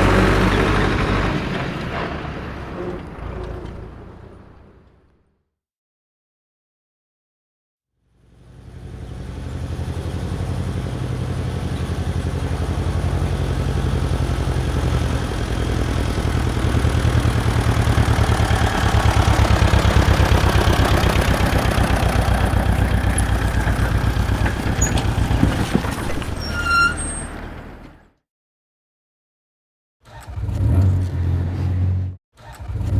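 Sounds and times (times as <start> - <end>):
tractor engine throbbing: 0.0 - 5.0, 8.5 - 26.7.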